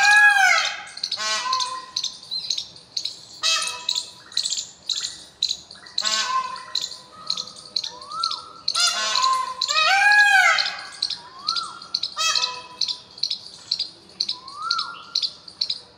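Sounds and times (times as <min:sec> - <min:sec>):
long arching bird call: 0:00.0 - 0:15.9
rising whistled bird notes: 0:01.1 - 0:09.7, 0:10.9 - 0:13.5, 0:14.2 - 0:15.4.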